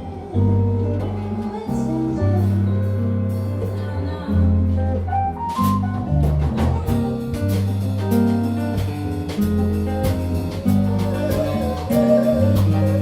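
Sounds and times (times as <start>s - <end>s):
guitar chords: 0.0s - 13.0s
sustained bass line: 0.0s - 13.0s
drum hits: 5.1s - 13.0s.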